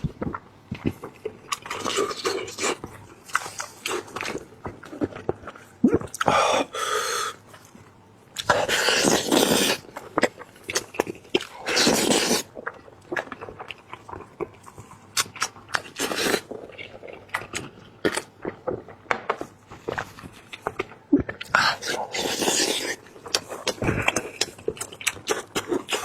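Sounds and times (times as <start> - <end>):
wet chewing and biting: 0.0 - 6.4, 8.4 - 26.0
slurping: 8.4 - 13.6, 21.3 - 26.0.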